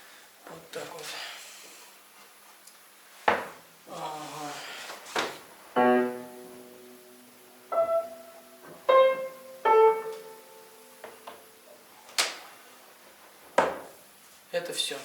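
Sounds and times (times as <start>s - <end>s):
slow piano notes: 5.7s - 11.9s.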